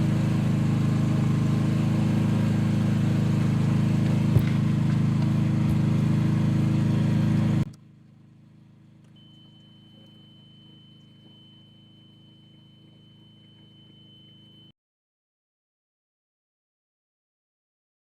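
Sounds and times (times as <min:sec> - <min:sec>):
excavator engine running: 0:00.0 - 0:14.6
faint high tone: 0:09.2 - 0:14.7.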